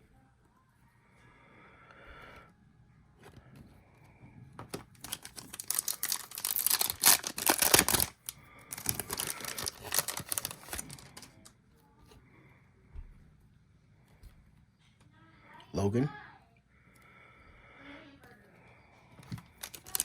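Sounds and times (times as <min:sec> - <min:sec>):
foil wrapper tearing and crinkling: 0:04.8 - 0:11.5, 0:19.3 - 0:20.0.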